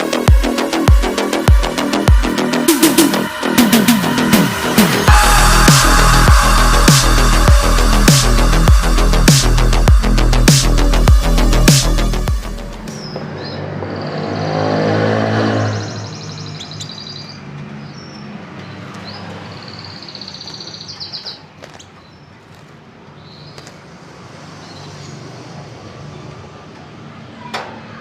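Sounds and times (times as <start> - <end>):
vehicle engine: 0.7 - 16.8.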